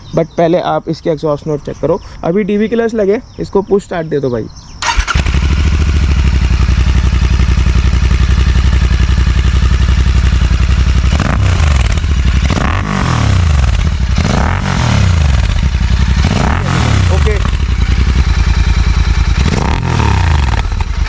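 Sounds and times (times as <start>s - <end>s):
motorcycle engine idling and revving: 4.6s - 21.0s.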